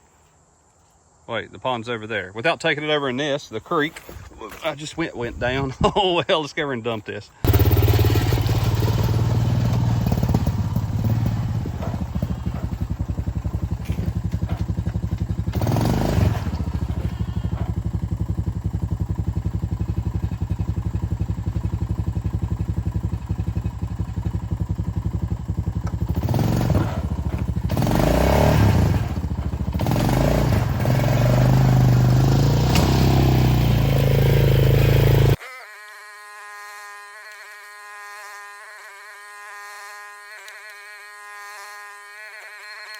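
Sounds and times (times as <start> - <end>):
small gasoline engine running: 7.4 - 35.4.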